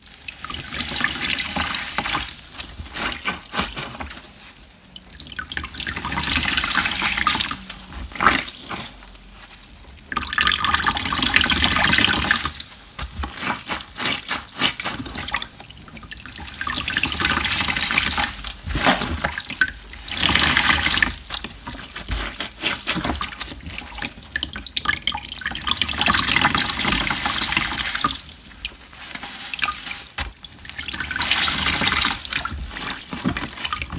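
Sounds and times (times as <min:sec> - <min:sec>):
water pouring and splashing: 0:00.0 - 0:33.9
water trickling and dripping: 0:04.4 - 0:13.4.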